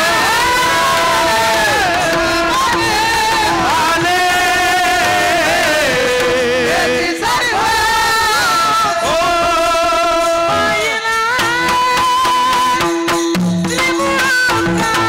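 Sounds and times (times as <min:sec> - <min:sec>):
person singing devotional song: 0:00.0 - 0:15.0.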